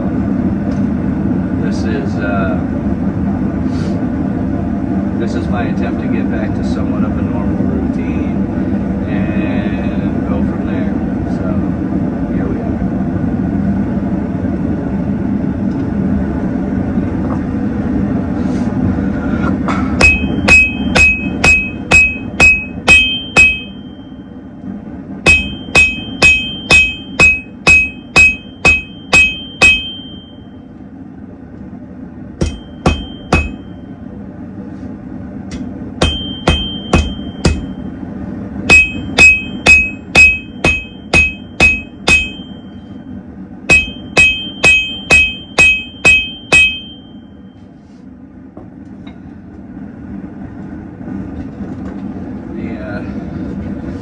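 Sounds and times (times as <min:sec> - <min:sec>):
low roar of a forge: 0:00.0 - 0:54.0
hammer striking on an anvil: 0:20.0 - 0:24.3, 0:25.3 - 0:30.5, 0:32.4 - 0:33.8, 0:35.5 - 0:37.9, 0:38.7 - 0:42.8, 0:43.7 - 0:47.2.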